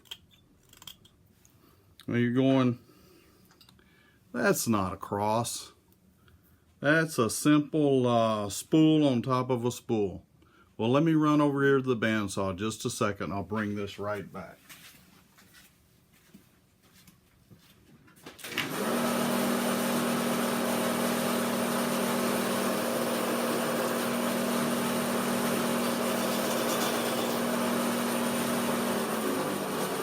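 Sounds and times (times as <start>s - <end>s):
bandsaw running: 18.5s - 30.0s.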